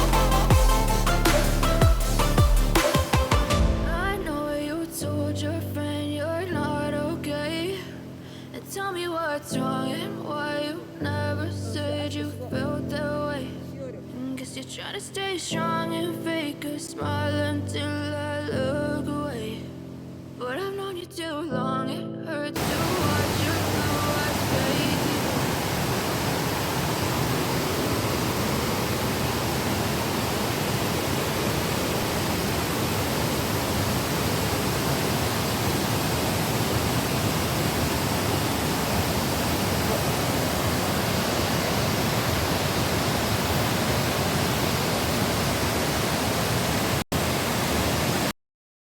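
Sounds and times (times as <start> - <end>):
waterfall rushing: 22.6 - 48.3.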